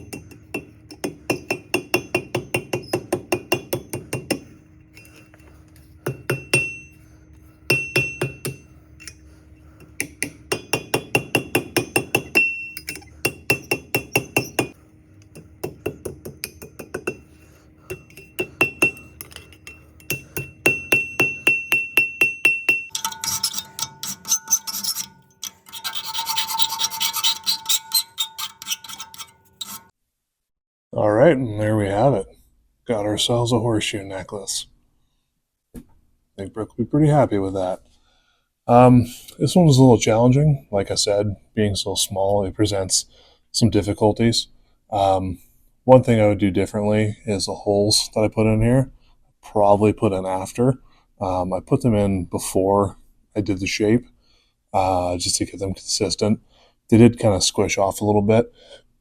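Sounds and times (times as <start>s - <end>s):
hammer striking steel on anvil: 0.0s - 5.2s, 6.0s - 7.0s, 7.7s - 9.2s, 9.8s - 25.8s
steady hum: 0.0s - 28.0s
scraping rubbing sound: 23.2s - 29.9s.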